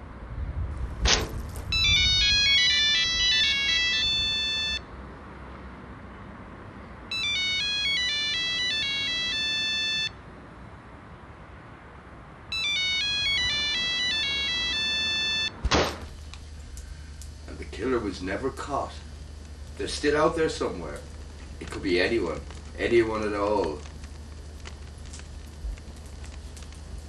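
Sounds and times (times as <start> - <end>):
phone ringtone melody: 1.7 - 4.8, 7.1 - 10.2, 12.5 - 15.6
sharp knock: 15.6 - 16.1.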